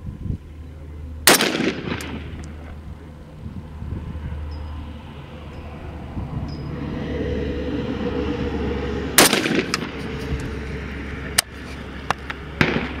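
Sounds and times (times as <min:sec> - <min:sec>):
rifle shot with echo: 0:01.2 - 0:02.5, 0:09.2 - 0:09.9, 0:12.6 - 0:13.0.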